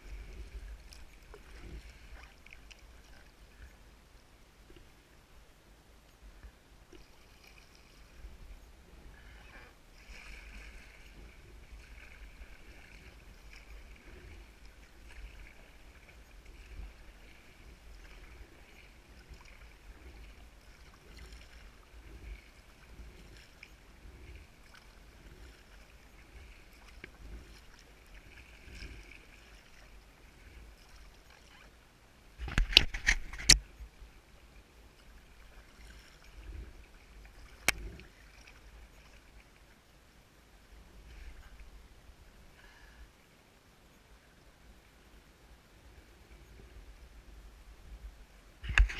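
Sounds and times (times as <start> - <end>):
water lapping at hull: 0.0 - 48.9
kayak paddle strokes: 6.3 - 31.8, 32.4 - 33.8, 48.6 - 48.9.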